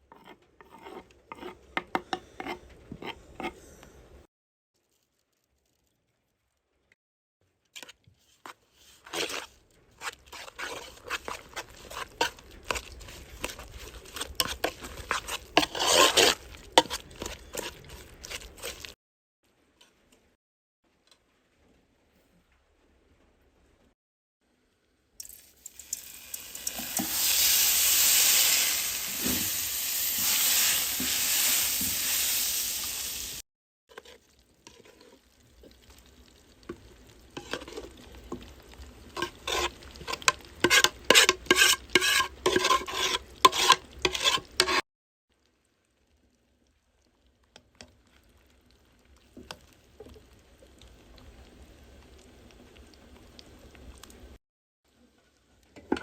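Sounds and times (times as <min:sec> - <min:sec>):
utensil scraping against a pan: 0:00.0 - 0:03.7, 0:07.8 - 0:19.0, 0:26.6 - 0:32.4, 0:33.9 - 0:35.3, 0:37.3 - 0:38.5, 0:39.1 - 0:44.8
food sizzling in oil in a pan: 0:25.2 - 0:44.8, 0:47.1 - 0:54.4.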